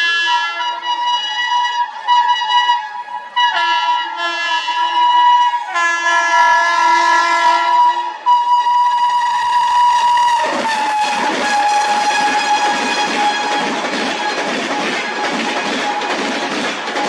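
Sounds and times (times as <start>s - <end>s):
locomotive twin-tone horn: 0.0s - 16.1s
rushing noise of passing train: 0.0s - 17.0s.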